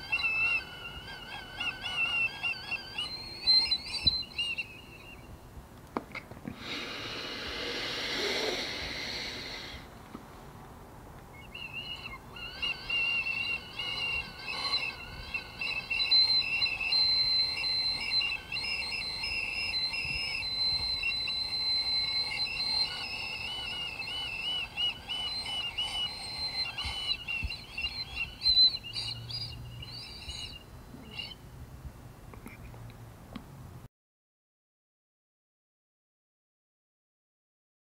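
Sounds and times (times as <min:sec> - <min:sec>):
breathy rush of air: 0:06.5 - 0:10.0
man's whistle-like throat warble: 0:11.8 - 0:29.5.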